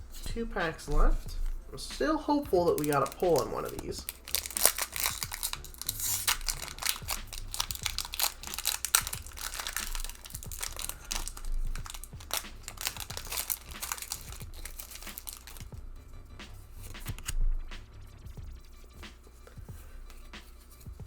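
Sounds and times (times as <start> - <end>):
foil wrapper crinkling and tearing: 0.8 - 15.8.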